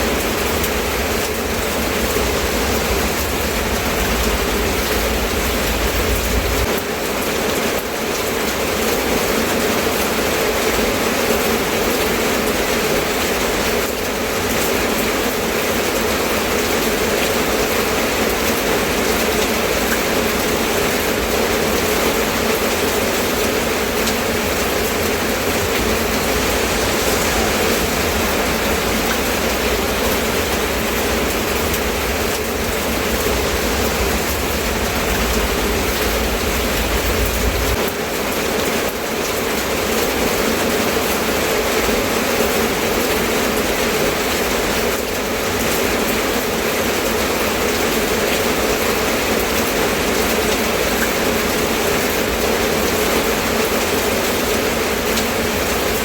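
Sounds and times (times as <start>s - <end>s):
steady rain falling: 0.0s - 56.0s
low rumble: 0.1s - 6.7s, 23.2s - 37.9s.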